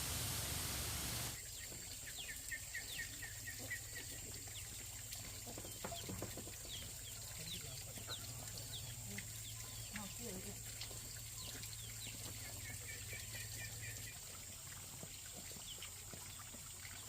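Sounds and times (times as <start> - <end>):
steady hiss: 0.0 - 1.4
birds chirping: 5.4 - 14.2.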